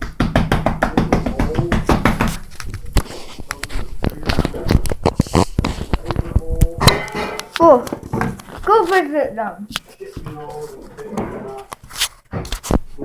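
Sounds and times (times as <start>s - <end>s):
person speaking: 0.9s - 4.8s, 5.8s - 11.8s.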